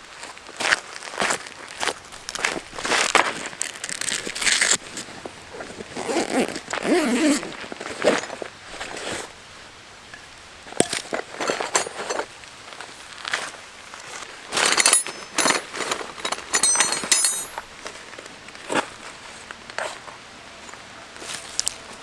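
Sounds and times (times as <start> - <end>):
rustles and knocks of gear: 0.6 - 9.4, 10.1 - 22.0
light metallic clinks: 14.5 - 17.9.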